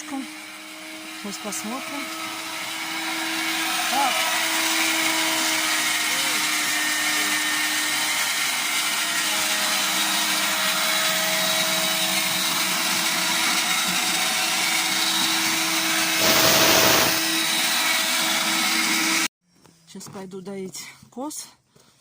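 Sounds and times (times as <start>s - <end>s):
electric grain crusher grinding: 0.0s - 19.3s
rushing surge: 16.2s - 17.2s.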